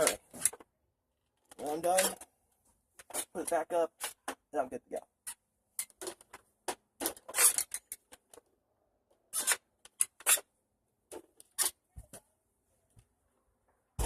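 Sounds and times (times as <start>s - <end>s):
plastic scrapes and rustles: 3.0s - 4.4s.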